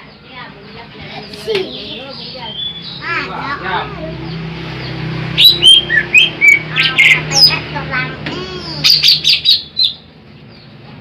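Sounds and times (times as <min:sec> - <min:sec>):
bird whistled chirps: 0:02.4 - 0:03.0.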